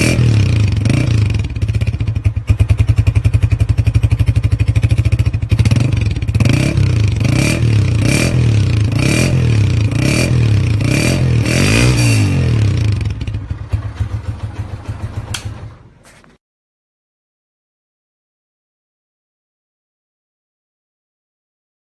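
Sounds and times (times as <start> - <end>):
motorcycle engine revving: 0.0 - 16.3
engine dying: 8.7 - 16.3
click: 15.3 - 15.5.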